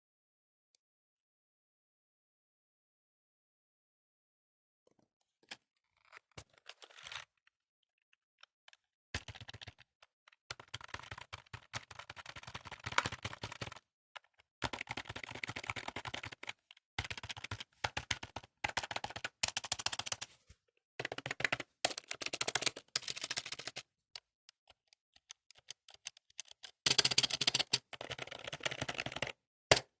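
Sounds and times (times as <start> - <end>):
fast keyboard typing: 9.2 - 20.2, 21.0 - 23.9, 24.6 - 30.0.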